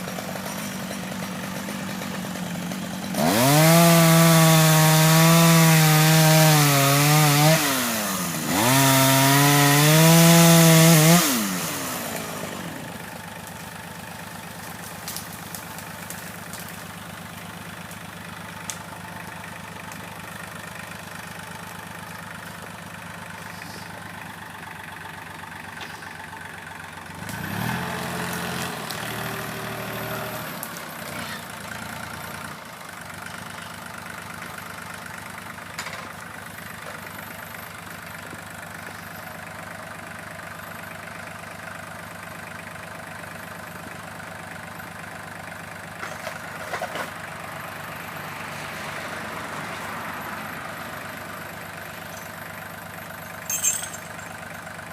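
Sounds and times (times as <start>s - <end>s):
engine idling: 0.0s - 3.7s, 11.3s - 54.9s
chainsaw running at high revs: 0.0s - 24.7s, 27.1s - 35.7s.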